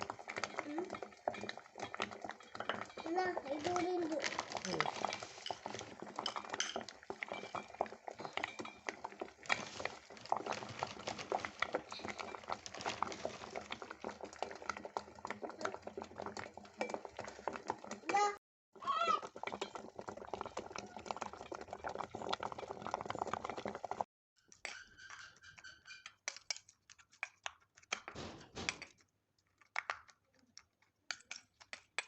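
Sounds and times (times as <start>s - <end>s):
spoon clinking and scraping in bowl: 0.0s - 18.0s, 24.4s - 26.8s.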